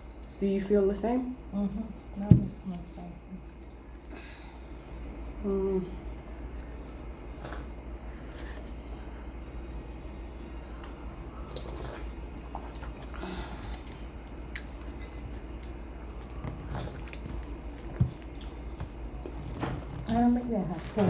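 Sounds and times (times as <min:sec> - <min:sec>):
steady low hum: 0:00.0 - 0:21.0
chewing and mouth sounds: 0:10.8 - 0:20.1.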